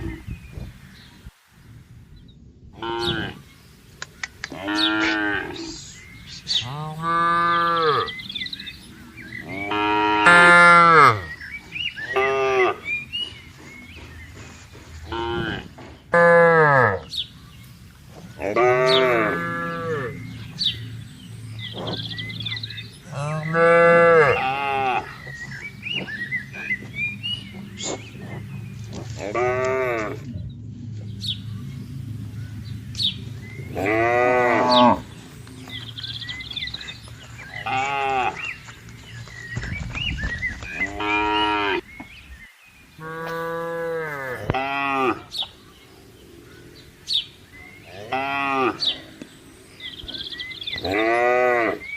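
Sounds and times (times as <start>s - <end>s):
cattle mooing: 2.8s - 3.4s, 4.5s - 5.8s, 6.5s - 8.3s, 9.4s - 11.4s, 12.0s - 13.0s, 15.0s - 17.1s, 18.4s - 20.8s, 21.7s - 30.4s, 33.4s - 35.2s, 37.5s - 38.6s, 43.0s - 45.3s, 47.7s - 49.2s, 50.1s - 51.9s.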